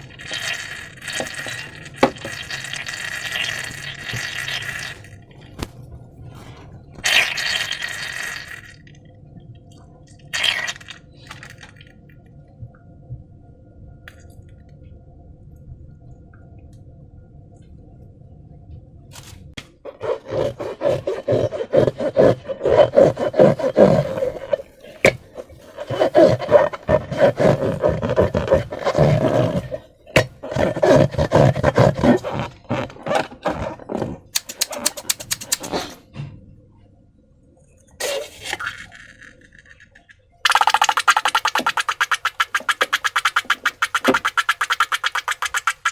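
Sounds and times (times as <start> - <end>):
wet squishing and rubbing: 19.9 - 36.0, 40.4 - 45.9.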